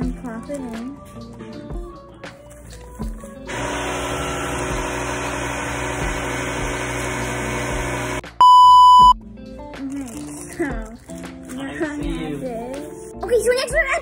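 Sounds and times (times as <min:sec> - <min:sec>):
microwave oven humming: 0:03.5 - 0:09.1
electronic beep: 0:08.4 - 0:09.2.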